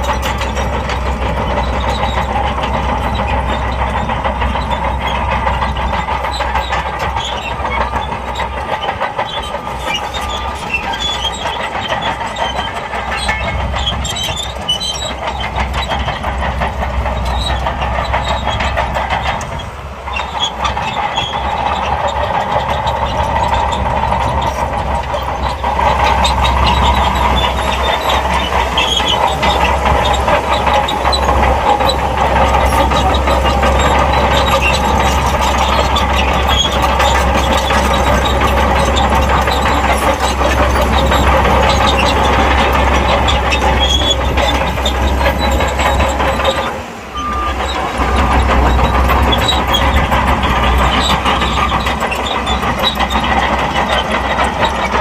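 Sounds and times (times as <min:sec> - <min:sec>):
bulldozer diesel engine under load: 0:00.0 - 0:55.0
steel tracks clattering: 0:00.0 - 0:55.0.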